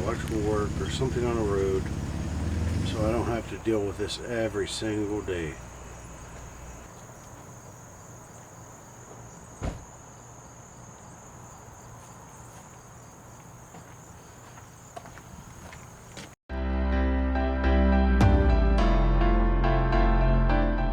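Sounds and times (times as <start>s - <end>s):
background hiss: 0.0s - 16.2s
high insect trilling: 4.4s - 16.0s
knock: 9.6s - 9.8s
music: 16.5s - 20.9s.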